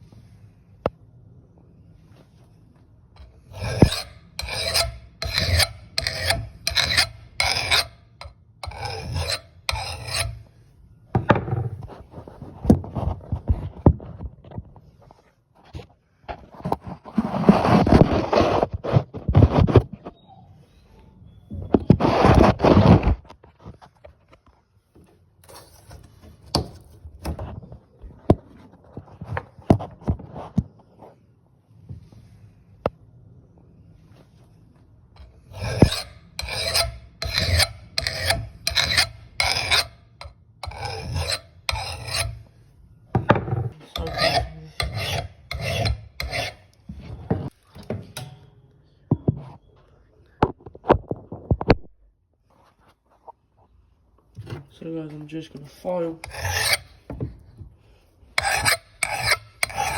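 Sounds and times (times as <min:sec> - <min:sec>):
file rasping on steel axe head: 0:03.2 - 0:10.5, 0:35.2 - 0:42.5, 0:43.8 - 0:46.8, 0:56.1 - 0:57.1, 0:58.3 - 0:59.9
knocks and clicks of handling tools: 0:45.6 - 0:49.6.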